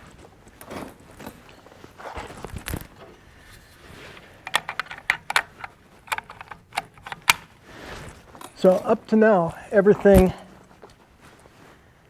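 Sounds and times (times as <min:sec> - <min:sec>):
metallic clicks and clinks: 0:04.1 - 0:07.6.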